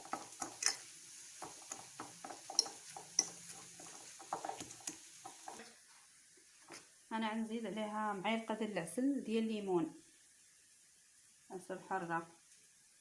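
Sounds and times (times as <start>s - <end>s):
spoon tapping and scraping dish: 0.0s - 5.6s
spoon clinking: 0.4s - 0.9s.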